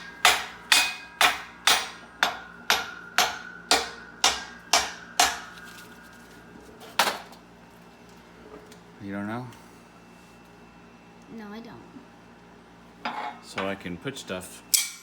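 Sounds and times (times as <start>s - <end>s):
hammer striking metal: 0.0s - 5.7s, 14.7s - 15.0s.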